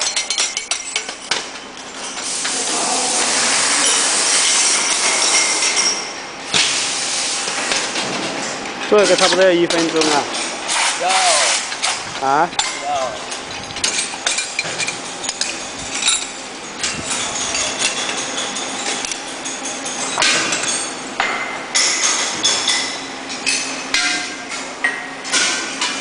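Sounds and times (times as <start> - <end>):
metal-on-metal knocks and clinks: 0.0 - 2.3, 11.7 - 26.0.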